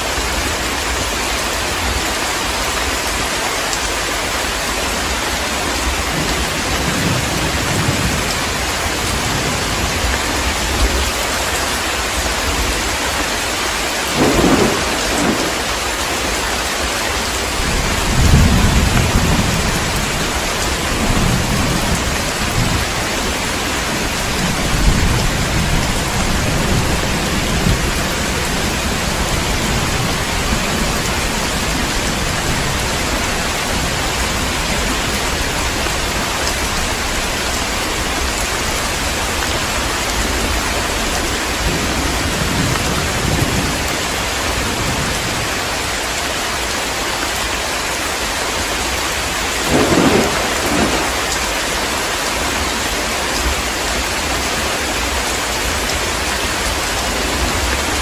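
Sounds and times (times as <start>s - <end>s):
heavy rain: 0.0s - 58.0s
low thunder rumble: 5.9s - 11.0s, 14.1s - 15.8s, 17.5s - 45.6s, 49.6s - 51.6s
thunder crack: 14.1s - 15.8s, 17.6s - 23.2s, 49.6s - 51.4s.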